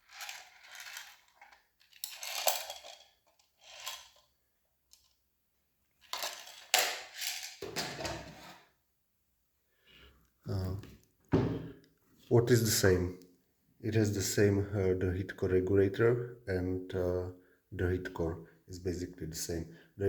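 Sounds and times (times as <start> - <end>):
plastic and metal scrapes and clacks: 0.0 - 4.3
dull knock: 11.3 - 11.8.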